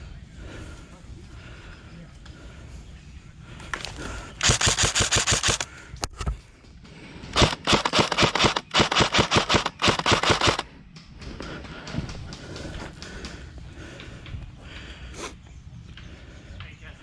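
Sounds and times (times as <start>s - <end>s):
airsoft gun firing full auto: 4.4s - 5.8s, 7.3s - 10.6s.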